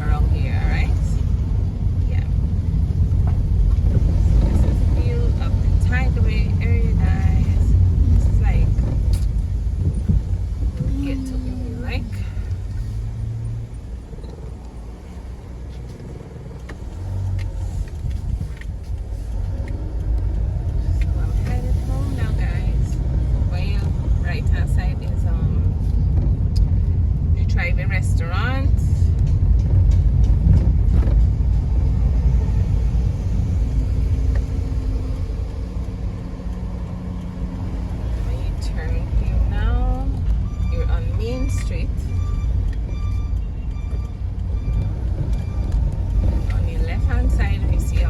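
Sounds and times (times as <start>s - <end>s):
car engine and road rumble: 0.0s - 48.0s.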